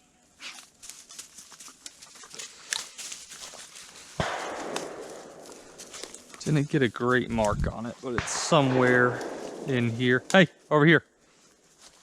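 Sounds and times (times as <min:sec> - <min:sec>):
footsteps in dry leaves: 0:00.4 - 0:06.9, 0:09.2 - 0:12.0.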